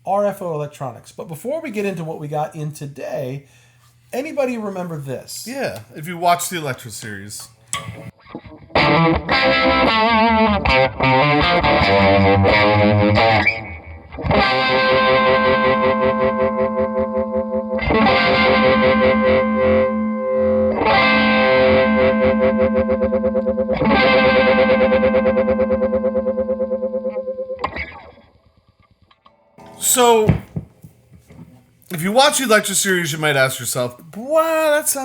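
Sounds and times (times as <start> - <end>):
distorted electric guitar with vibe: 7.7 - 31.4.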